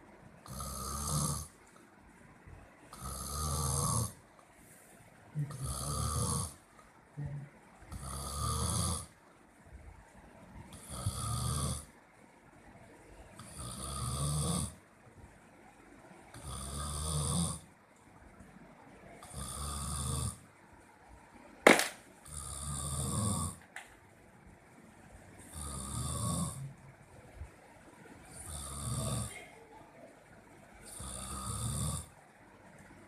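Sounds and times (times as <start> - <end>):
quiet breaths: 0.0 - 21.5, 24.3 - 33.0
person snoring: 0.4 - 1.6, 2.9 - 4.2, 5.4 - 6.6, 7.3 - 9.1, 10.7 - 11.9, 13.4 - 14.8, 16.3 - 17.6, 19.2 - 20.4, 22.2 - 23.6, 25.5 - 26.7, 28.3 - 29.4, 30.8 - 32.1.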